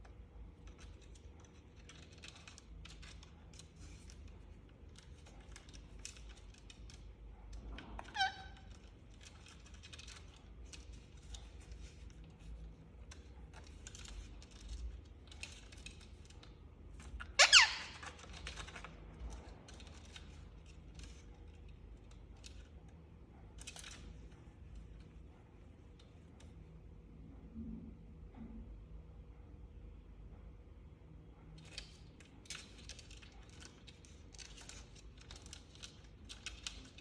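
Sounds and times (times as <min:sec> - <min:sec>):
faint clicking and scratching: 0:00.0 - 0:17.4, 0:18.0 - 0:28.7, 0:31.3 - 0:37.0
parrot screeching: 0:08.0 - 0:08.7, 0:17.4 - 0:18.2.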